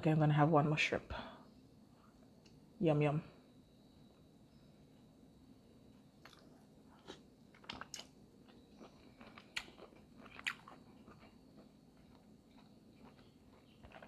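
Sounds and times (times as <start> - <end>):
close chewing: 6.2 - 14.0.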